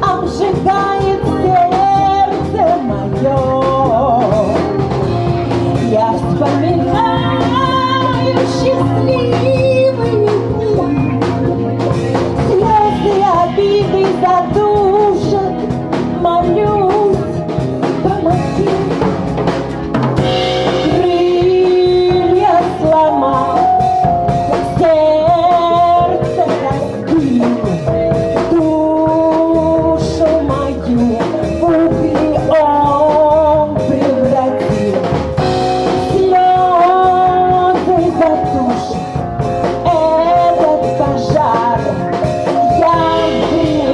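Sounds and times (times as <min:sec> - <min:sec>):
woman singing: 0:00.0 - 0:19.2, 0:20.3 - 0:43.9
band playing sustained chords: 0:00.0 - 0:43.9
drum kit beat: 0:00.0 - 0:43.9.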